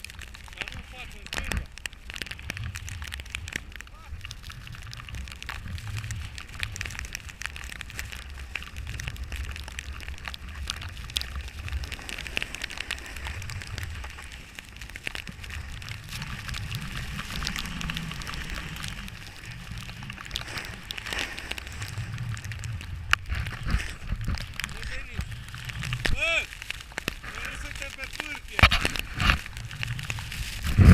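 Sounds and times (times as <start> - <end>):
crackling hiss of snow: 0.0 - 30.9
wind buffeting microphone: 27.1 - 30.9.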